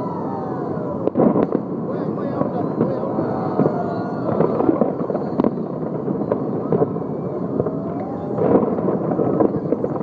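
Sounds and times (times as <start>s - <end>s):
fireworks crackling and banging: 0.0s - 10.0s.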